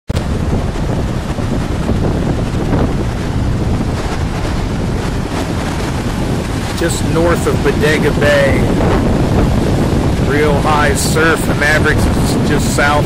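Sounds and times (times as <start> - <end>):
heavy ocean surf rumble: 0.1 - 13.0
wind buffeting microphone: 0.1 - 13.0.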